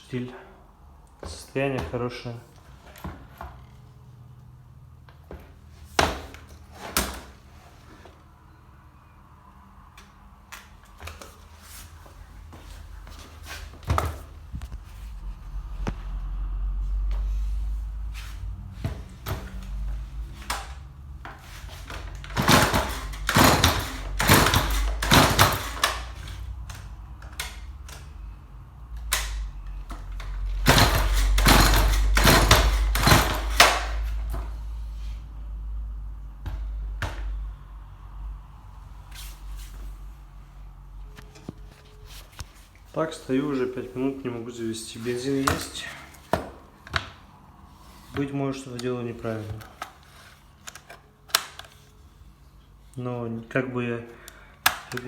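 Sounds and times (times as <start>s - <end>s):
low rumble: 14.2s - 21.2s
knocks and clunks: 18.0s - 28.0s, 29.1s - 34.5s
chainsaw starter cord pulls: 22.0s - 26.4s, 30.2s - 34.0s.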